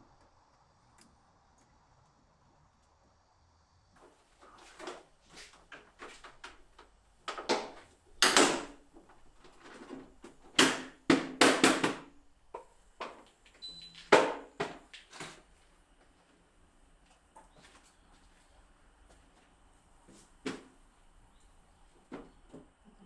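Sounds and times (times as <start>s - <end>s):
objects knocking and clacking: 5.7s - 13.3s.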